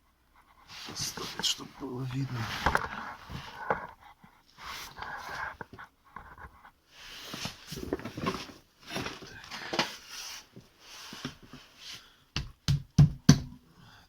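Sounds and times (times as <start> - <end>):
scraping and rustling: 0.6 - 11.8.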